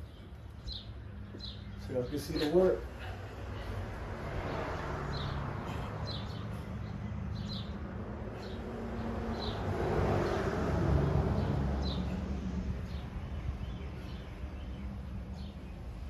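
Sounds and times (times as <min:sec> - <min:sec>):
bird chirping: 0:00.0 - 0:02.8, 0:05.1 - 0:10.4, 0:11.4 - 0:16.0
street traffic noise: 0:00.0 - 0:16.0
vehicle passing: 0:00.6 - 0:16.0.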